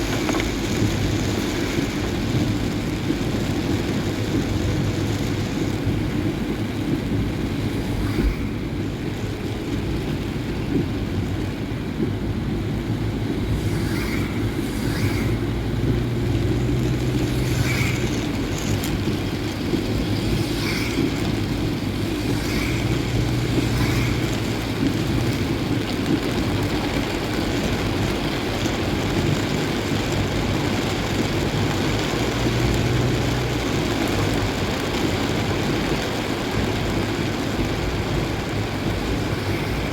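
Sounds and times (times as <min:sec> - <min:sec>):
rain hissing: 0:00.0 - 0:39.9
vehicle engine and tyre noise: 0:00.0 - 0:39.9
low hum: 0:13.1 - 0:25.5.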